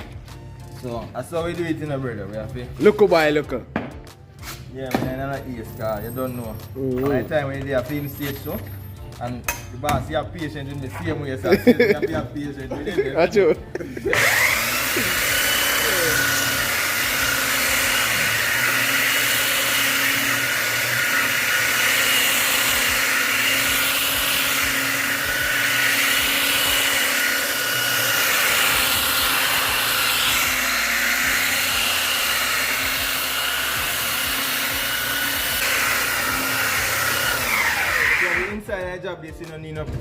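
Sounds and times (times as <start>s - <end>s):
electric sander on wood: 13.0s - 38.6s.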